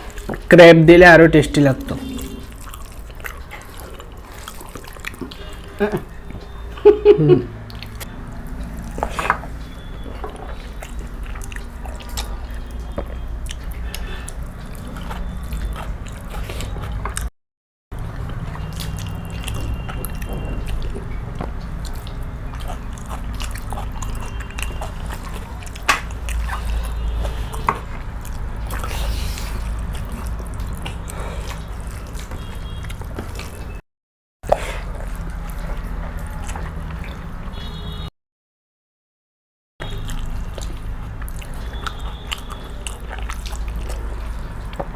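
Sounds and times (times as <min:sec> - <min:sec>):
people chewing food: 0:00.0 - 0:00.5, 0:01.7 - 0:17.3, 0:17.9 - 0:33.8, 0:34.4 - 0:38.1, 0:39.8 - 0:44.9.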